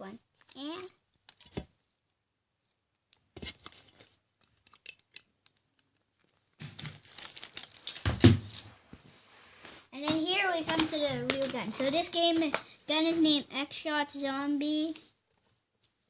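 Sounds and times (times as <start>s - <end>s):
wrapping paper crinkling and tearing: 3.6s - 8.8s.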